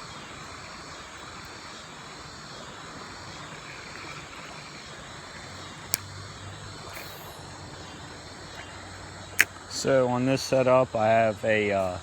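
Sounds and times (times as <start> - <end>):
sharp click: 7.0 - 7.4.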